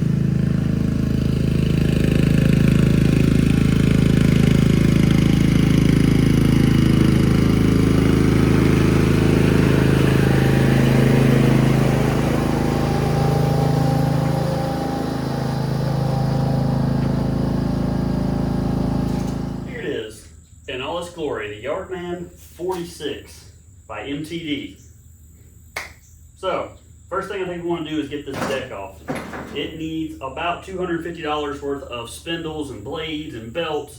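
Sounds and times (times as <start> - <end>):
lawn mower engine running: 0.0 - 20.0, 28.1 - 33.9.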